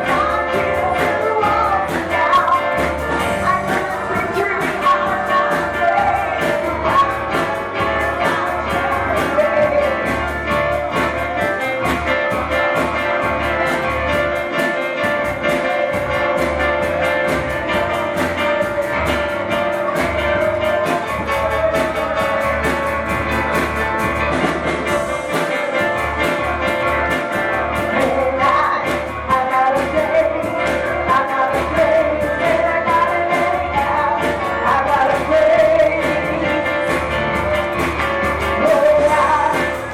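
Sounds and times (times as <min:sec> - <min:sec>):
voices singing: 0:00.0 - 0:12.9
band with steady beat: 0:00.0 - 0:39.9
sustained keyboard chords: 0:00.0 - 0:39.9.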